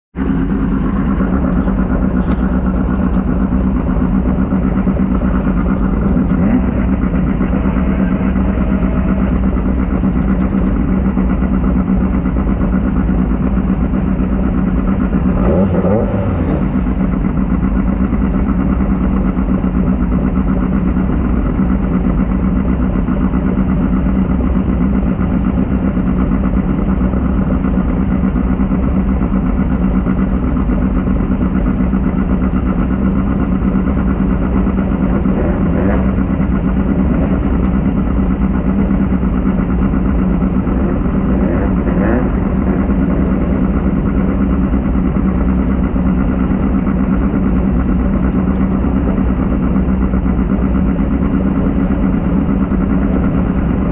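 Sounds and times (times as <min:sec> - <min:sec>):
race car engine running: 0:00.1 - 0:53.9
short wavering tone: 0:06.5 - 0:11.0.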